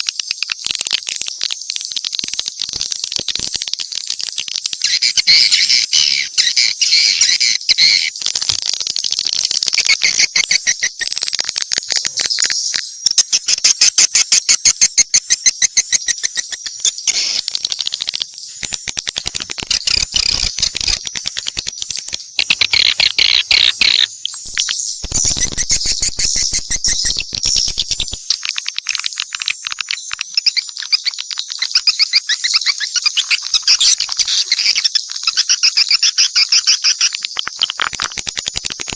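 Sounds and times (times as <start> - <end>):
swiftlets twittering: 9.4 - 37.1.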